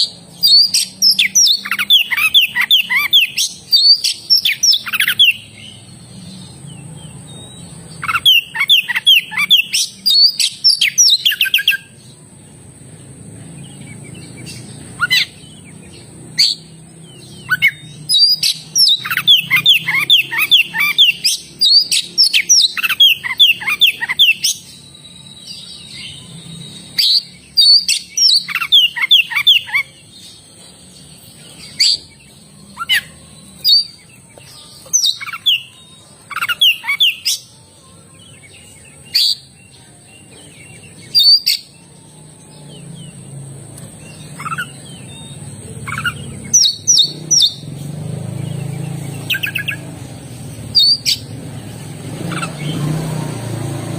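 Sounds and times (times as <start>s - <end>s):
bird singing sharp whistled notes: 0.0s - 5.9s, 6.6s - 12.0s, 13.6s - 30.4s, 40.4s - 43.4s, 50.7s - 53.7s.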